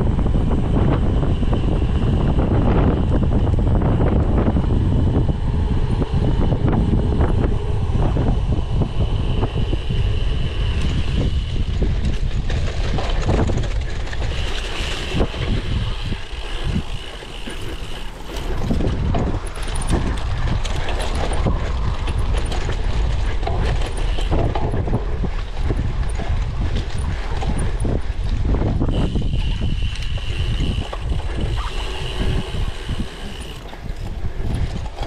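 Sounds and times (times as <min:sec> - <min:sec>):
low rumble: 0:00.0 - 0:35.0
wind buffeting microphone: 0:00.0 - 0:35.0
bike clattering over rough ground: 0:10.4 - 0:35.0.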